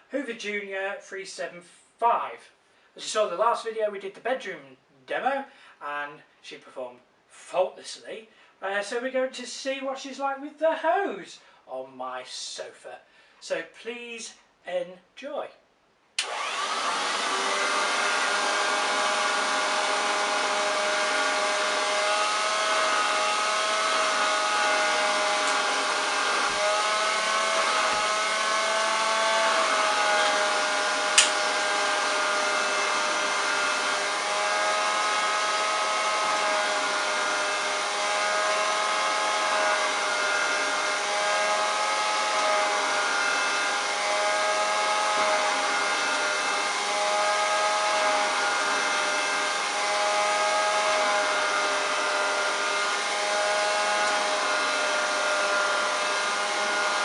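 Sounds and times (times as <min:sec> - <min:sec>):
vacuum cleaner motor whine: 0:16.2 - 0:57.0
sharp click: 0:31.2 - 0:31.4.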